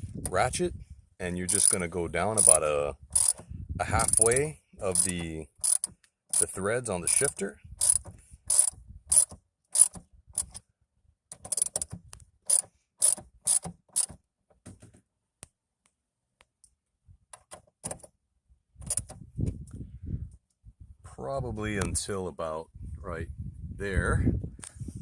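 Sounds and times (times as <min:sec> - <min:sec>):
ratchet wrench clicking: 0:01.5 - 0:01.8, 0:02.4 - 0:03.4, 0:04.0 - 0:10.6, 0:11.4 - 0:14.2.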